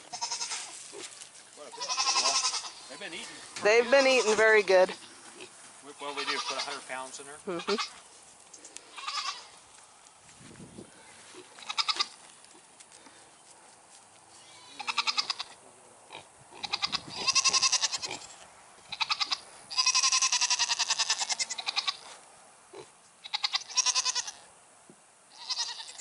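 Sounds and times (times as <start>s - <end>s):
goats bleating: 0.0s - 8.0s, 8.8s - 9.6s, 11.3s - 12.2s, 14.3s - 15.6s, 16.5s - 18.3s, 18.9s - 22.2s, 23.2s - 24.5s, 25.3s - 26.0s.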